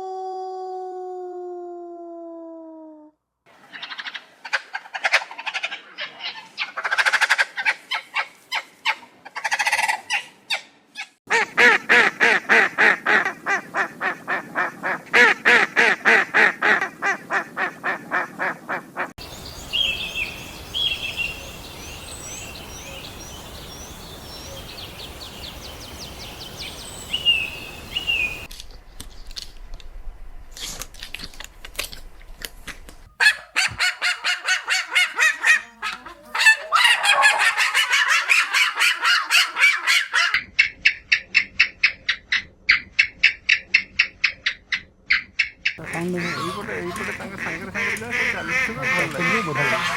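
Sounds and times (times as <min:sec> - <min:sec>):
birds honking: 0:11.3 - 0:28.5, 0:45.8 - 0:49.9
high chirping birdsong: 0:19.2 - 0:28.5, 0:45.8 - 0:49.9
steady hiss: 0:19.2 - 0:28.5.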